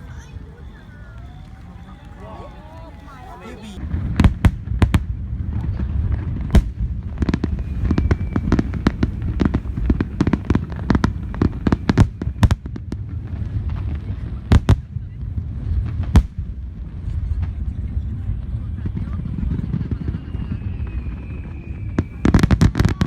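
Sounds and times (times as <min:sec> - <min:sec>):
fireworks bangs and crackles: 0:00.0 - 0:23.0.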